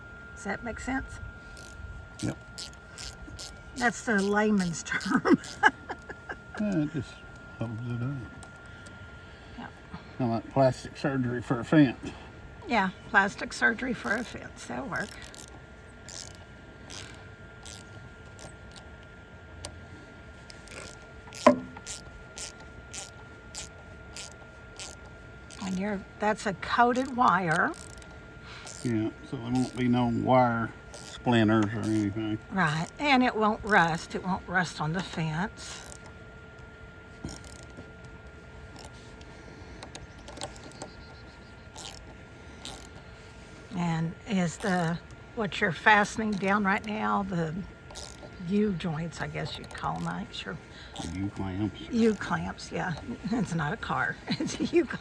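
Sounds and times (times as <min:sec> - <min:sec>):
hand ratchet clicking: 0:15.0 - 0:18.8, 0:20.6 - 0:25.8, 0:27.0 - 0:28.9, 0:30.9 - 0:31.2, 0:35.7 - 0:36.1, 0:41.8 - 0:42.0, 0:47.9 - 0:48.3.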